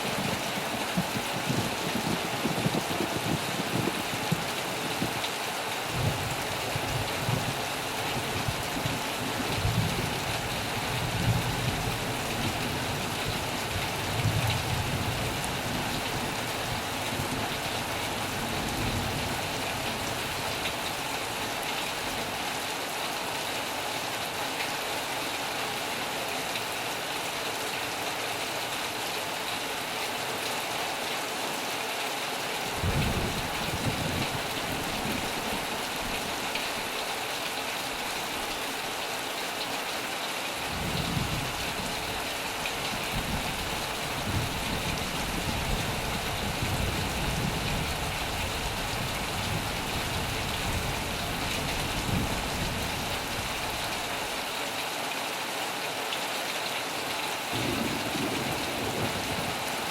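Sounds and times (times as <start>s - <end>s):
heavy rain on a metal roof: 0.0s - 59.9s
thunder rumbling: 32.8s - 35.7s, 57.5s - 59.6s.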